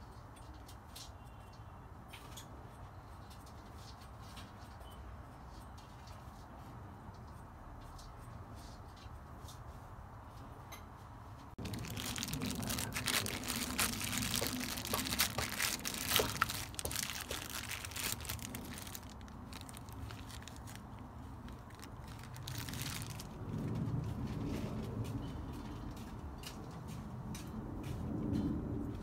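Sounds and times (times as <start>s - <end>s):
flux crackling and spitting: 11.6s - 23.4s.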